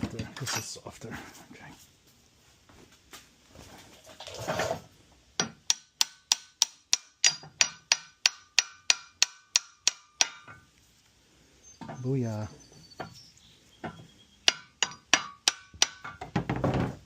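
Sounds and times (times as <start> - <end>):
hammer striking metal: 5.4 - 10.6, 14.5 - 16.3.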